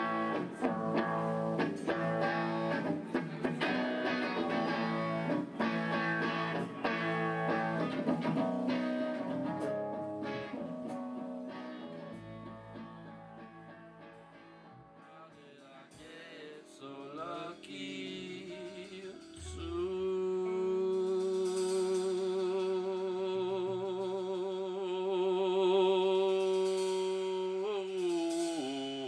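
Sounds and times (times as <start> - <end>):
picked guitar notes: 0.0 - 16.1, 16.7 - 23.4
long held sung note: 17.4 - 23.7.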